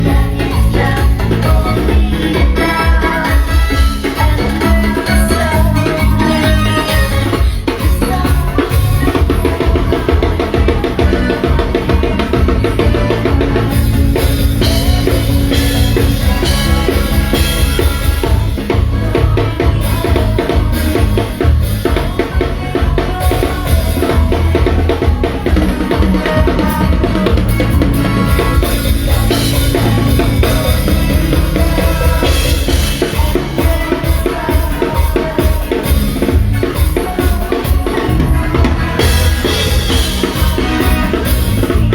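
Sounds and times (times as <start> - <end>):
bass drum and snare beat: 0.0 - 41.9
live band playing loudly: 0.0 - 41.9.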